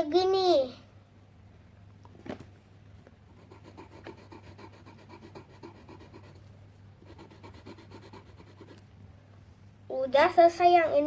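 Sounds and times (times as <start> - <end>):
pencil scribbling on paper: 3.3 - 6.4, 7.0 - 8.8.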